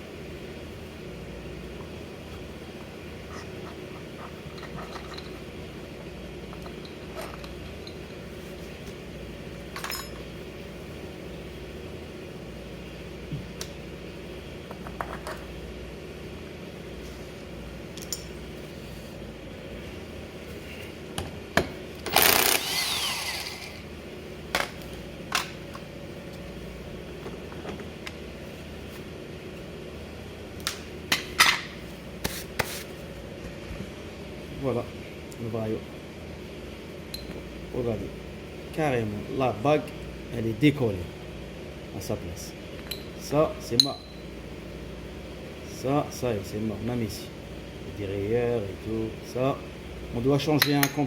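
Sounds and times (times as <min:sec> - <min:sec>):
steady hum: 0:00.0 - 0:51.0.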